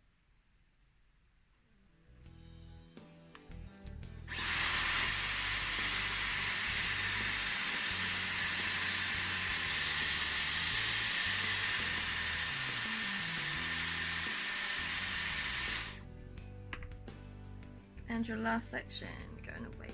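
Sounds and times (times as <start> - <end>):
hair styler air rush and whine: 4.3 - 16.0.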